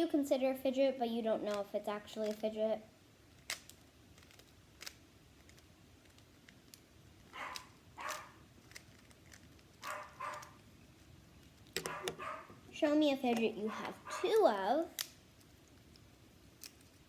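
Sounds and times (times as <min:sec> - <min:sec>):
dog barking faintly: 0:07.4 - 0:08.4, 0:09.8 - 0:10.6, 0:11.8 - 0:12.6, 0:13.6 - 0:14.6.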